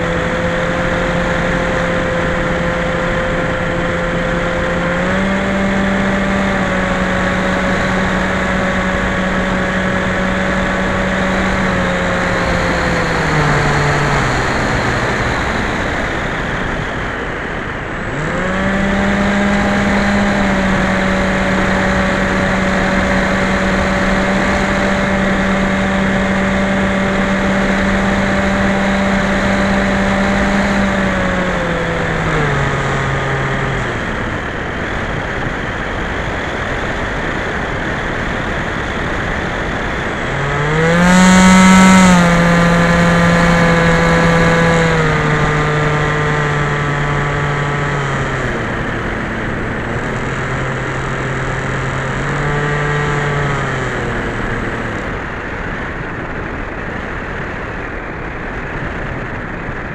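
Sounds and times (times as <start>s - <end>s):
model plane motor drone: 0.0s - 59.9s
rushing air noise: 0.0s - 59.9s.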